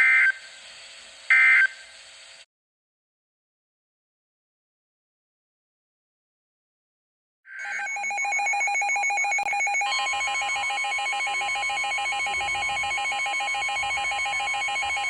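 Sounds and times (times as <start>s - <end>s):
rapid trilling electronic beep: 7.6s - 15.0s
steady warning tone: 7.6s - 15.0s.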